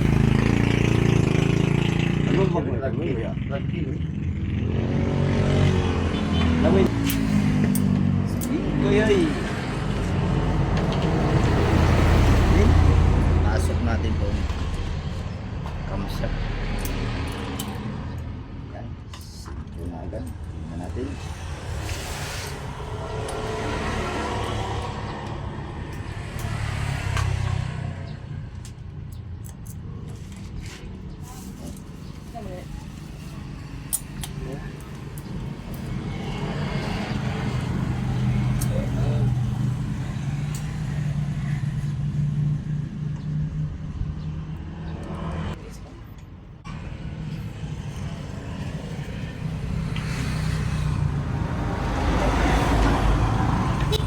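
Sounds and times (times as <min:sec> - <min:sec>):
vehicle engine passing by: 0:04.4 - 0:18.2, 0:20.5 - 0:28.5, 0:35.5 - 0:45.8, 0:46.7 - 0:54.0.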